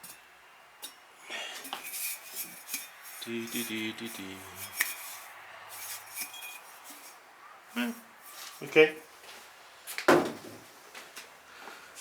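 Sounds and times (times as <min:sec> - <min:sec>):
stoneware pots clinking and scraping: 0:01.6 - 0:07.2.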